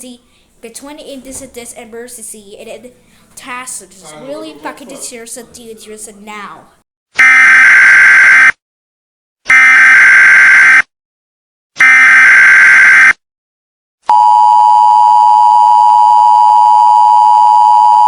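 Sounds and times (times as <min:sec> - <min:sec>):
two-tone attention signal: 0:14.1 - 0:18.0.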